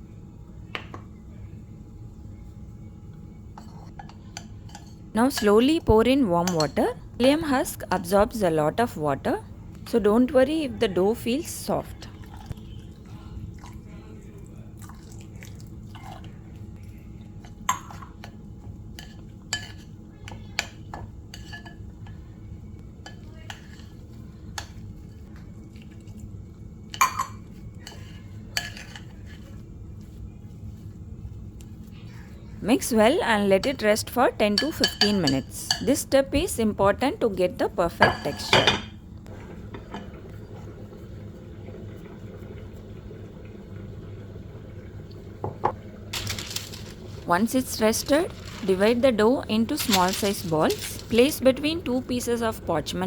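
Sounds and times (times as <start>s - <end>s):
utensil stirring dough in bowl: 3.3s - 6.8s, 10.8s - 22.2s, 22.9s - 26.3s, 26.9s - 36.5s, 46.2s - 53.0s.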